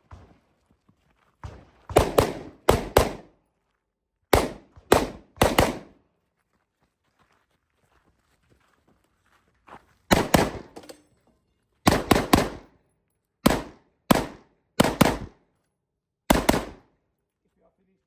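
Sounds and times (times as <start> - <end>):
rifle shots: 1.9 - 3.3, 4.3 - 5.9, 10.1 - 10.9, 11.9 - 12.7, 13.4 - 15.4, 16.3 - 16.9.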